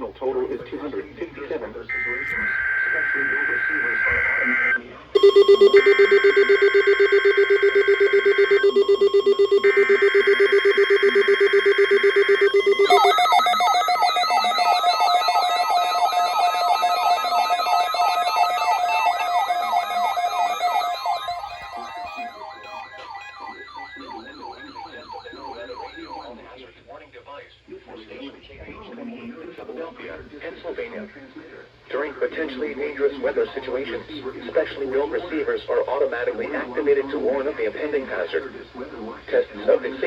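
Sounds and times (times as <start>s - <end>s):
siren-like warble: 1.9s - 26.4s
steady electronic tone: 5.2s - 26.4s
buzzy paired high tone bursts: 8.8s - 26.4s.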